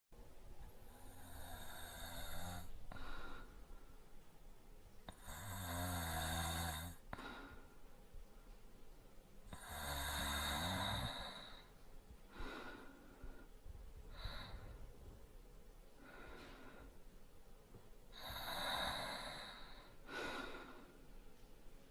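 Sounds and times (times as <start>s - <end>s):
man snoring lightly: 0.8s - 3.3s, 5.1s - 7.2s, 9.5s - 11.7s, 18.1s - 20.8s.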